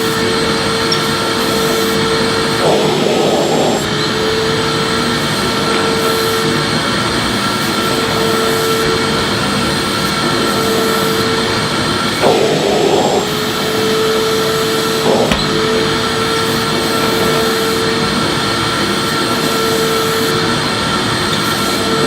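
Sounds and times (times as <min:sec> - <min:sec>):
vacuum cleaner whining: 0:00.0 - 0:22.0
short knock: 0:15.3 - 0:15.9.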